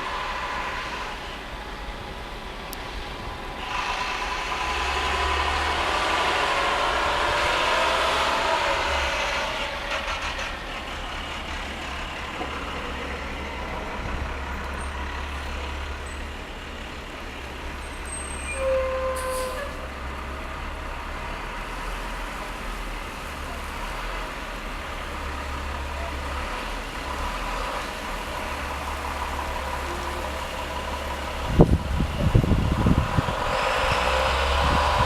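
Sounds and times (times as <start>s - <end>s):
road vehicle passing: 0.0s - 18.4s, 19.5s - 35.0s
wind rumble on microphone: 31.2s - 35.0s.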